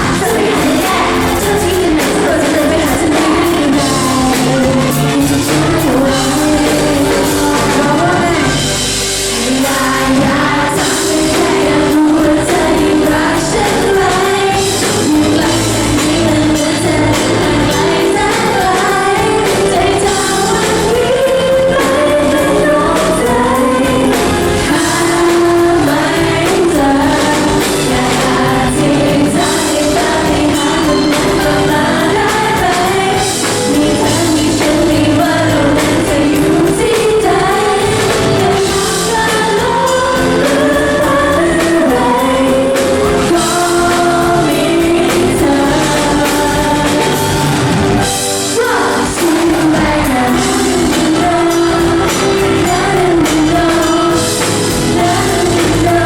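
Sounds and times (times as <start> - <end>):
amplified backing music with beat: 0.0 - 56.0
women singing pop song: 0.0 - 56.0.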